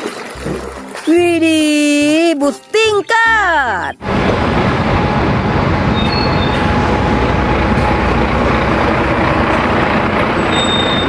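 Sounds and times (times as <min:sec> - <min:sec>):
bus engine rumble: 0:03.9 - 0:11.0.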